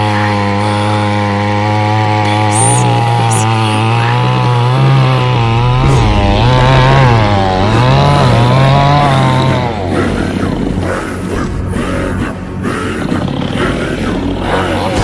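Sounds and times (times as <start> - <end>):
chainsaw running at high speed: 0.0 - 15.0.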